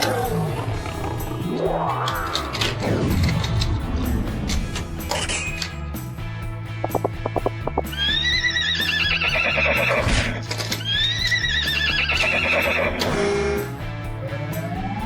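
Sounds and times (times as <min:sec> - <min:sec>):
background music: 0:00.0 - 0:15.0
horse whinnies: 0:07.9 - 0:13.6.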